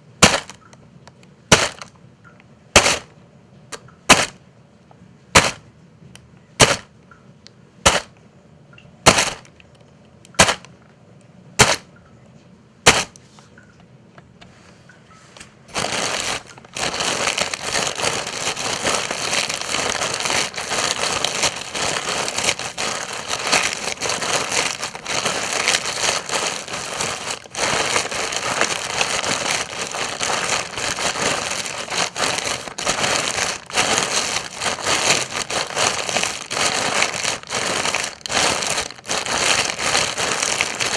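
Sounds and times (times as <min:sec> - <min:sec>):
dry leaves crackling and rustling: 0:00.2 - 0:00.6, 0:01.5 - 0:01.9, 0:15.7 - 0:40.9
footsteps on dry leaves: 0:15.7 - 0:40.9.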